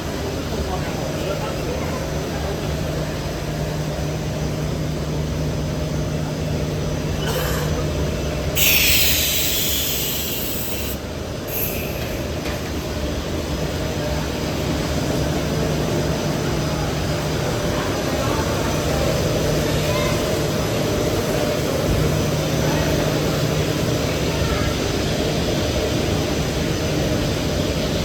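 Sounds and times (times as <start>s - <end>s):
loud hiss: 8.6s - 12.4s.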